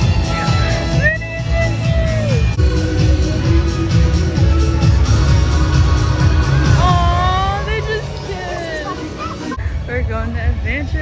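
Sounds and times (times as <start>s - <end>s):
music with heavy low beat: 0.0s - 7.9s.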